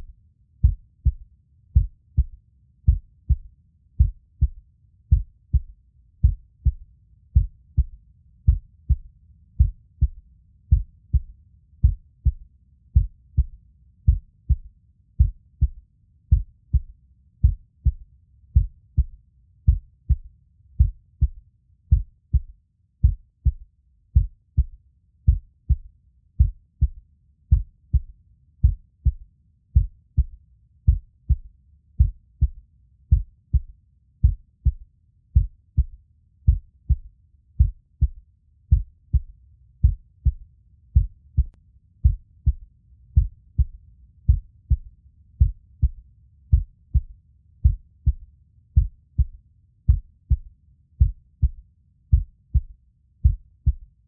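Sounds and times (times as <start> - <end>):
heartbeat thumps: 0.0 - 1.2, 1.8 - 6.8, 7.4 - 12.4, 13.0 - 18.0, 18.6 - 23.6, 24.2 - 29.2, 29.8 - 34.8, 35.4 - 40.4, 41.0 - 54.0
faint low rumble: 0.0 - 54.0.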